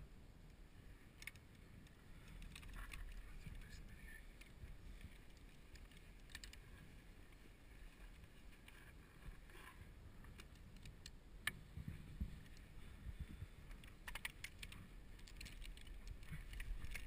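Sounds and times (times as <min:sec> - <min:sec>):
low background rumble: 0:00.0 - 0:17.0
faint clicks and light taps: 0:00.4 - 0:07.4, 0:08.0 - 0:17.0.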